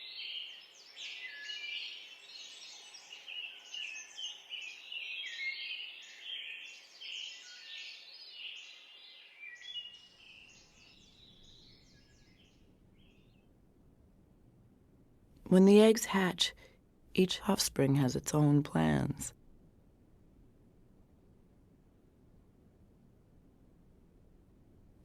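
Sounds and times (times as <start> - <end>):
birds chirping and singing: 0.0 - 13.2.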